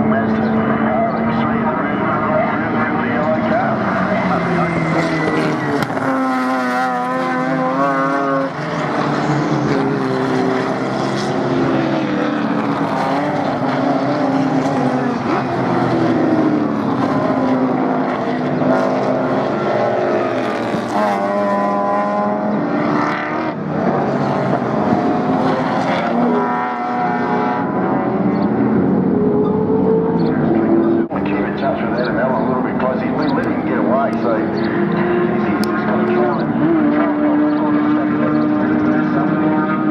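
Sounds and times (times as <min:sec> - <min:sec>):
race car engines accelerating: 0:00.0 - 0:39.9.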